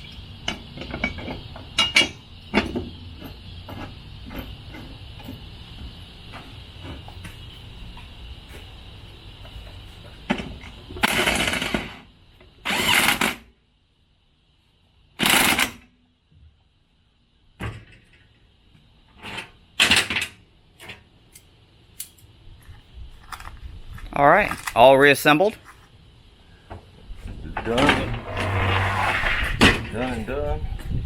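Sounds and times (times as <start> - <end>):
power tool mechanical bursts: 12.7 - 13.4.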